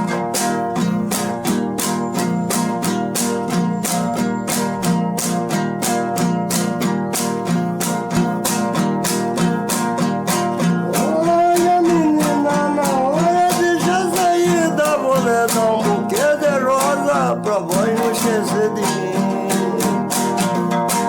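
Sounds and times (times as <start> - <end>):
folk lute strummed: 0.0 - 21.0
person singing: 8.2 - 21.0.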